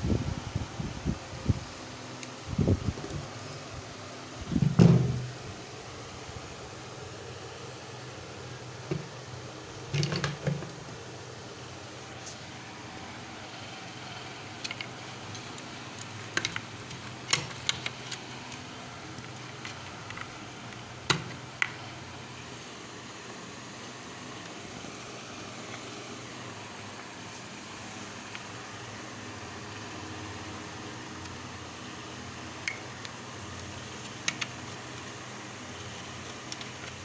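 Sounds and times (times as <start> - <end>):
low fan-like hum: 0.0 - 37.0
clicks and taps of tools: 14.6 - 18.6, 19.2 - 21.8, 34.0 - 35.1.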